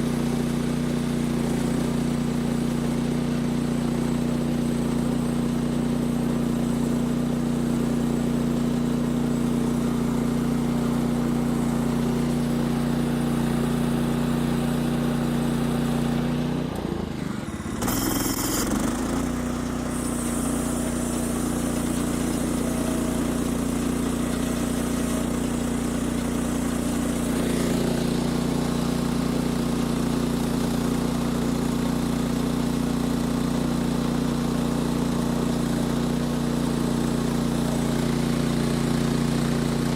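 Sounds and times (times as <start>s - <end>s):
sawmill gas engine running: 0.0s - 39.9s
short hiss: 17.8s - 22.6s.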